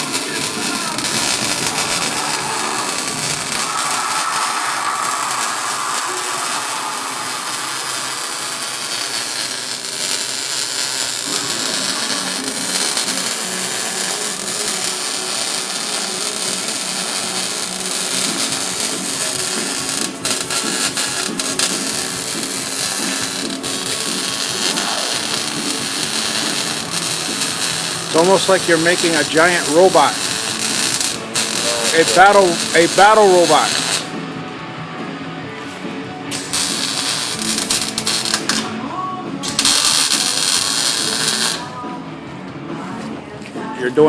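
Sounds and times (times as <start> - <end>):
harsh metalworking hiss: 0.0 - 34.1, 35.7 - 38.7, 39.5 - 41.7
low hum: 1.2 - 9.5.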